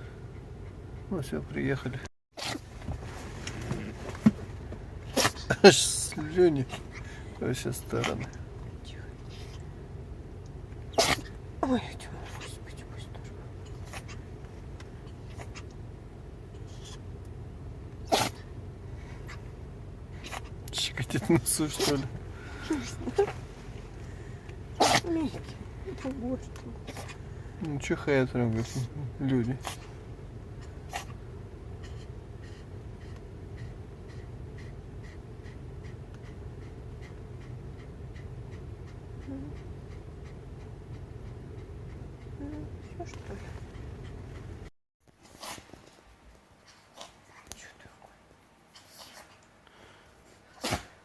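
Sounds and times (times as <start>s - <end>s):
small dog panting: 0.0s - 1.6s, 5.1s - 9.7s, 11.0s - 15.8s, 18.1s - 44.7s
low steady hum: 0.0s - 51.0s
small dog sneezing: 2.4s - 2.7s, 5.1s - 5.6s, 10.9s - 11.4s, 13.8s - 14.2s, 18.0s - 18.5s, 24.7s - 25.5s, 30.6s - 31.2s, 45.2s - 45.8s, 48.7s - 49.4s, 50.5s - 51.0s.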